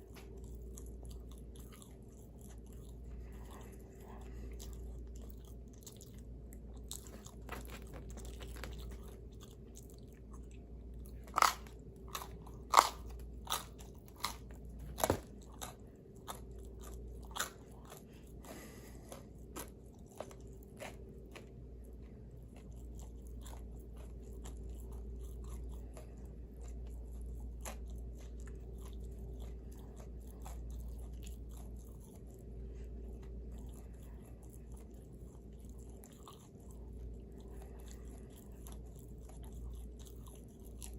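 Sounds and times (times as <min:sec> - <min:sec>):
crunchy bites and chewing: 0:00.0 - 0:40.9
steady low hum: 0:00.0 - 0:40.9.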